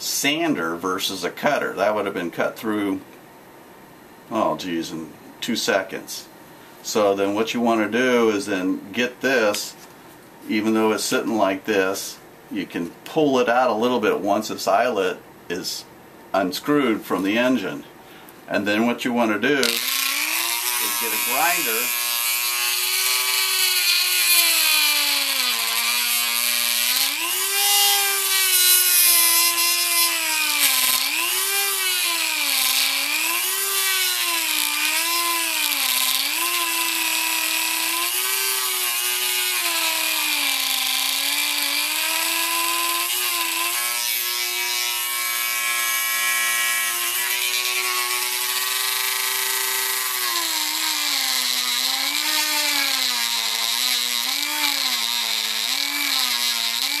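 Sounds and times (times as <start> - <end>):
rotary tool grinding plastic: 19.6 - 57.0.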